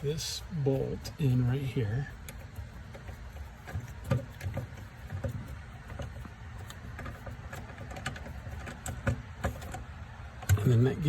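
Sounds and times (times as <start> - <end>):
metal parts clicking and knocking: 2.0 - 9.8.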